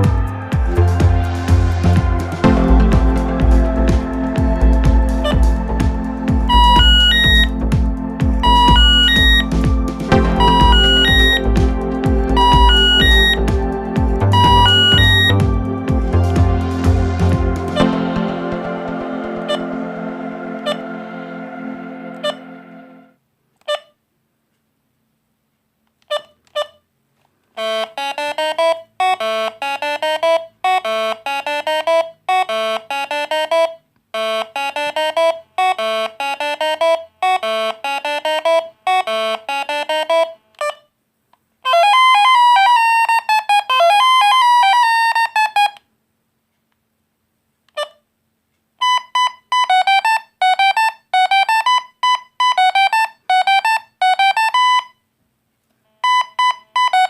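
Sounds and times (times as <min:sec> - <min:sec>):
phone ringtone buzzy notes: 0:00.0 - 0:23.9, 0:27.6 - 0:40.8
short phone beeps: 0:06.6 - 0:07.5, 0:08.4 - 0:09.4, 0:10.4 - 0:11.4, 0:14.3 - 0:15.4, 0:48.8 - 0:55.0, 0:56.0 - 0:57.0.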